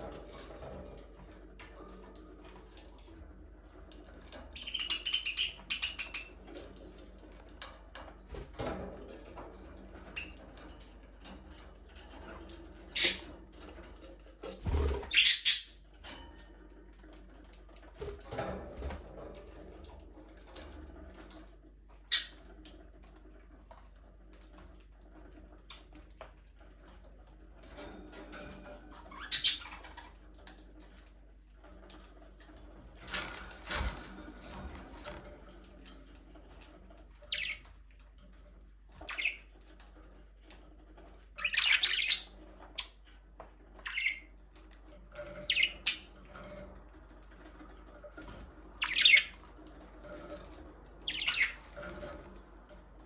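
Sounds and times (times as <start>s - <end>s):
budgerigars chirping: 4.6s - 6.3s, 14.8s - 15.8s, 22.1s - 22.4s, 41.4s - 42.4s, 43.8s - 44.3s, 48.8s - 49.4s, 51.0s - 51.7s.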